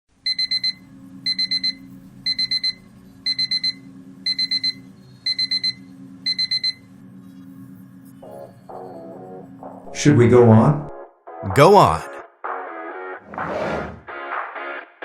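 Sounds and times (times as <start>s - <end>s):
electronic alarm beeping: 0.2s - 6.9s
low hum: 0.2s - 11.0s.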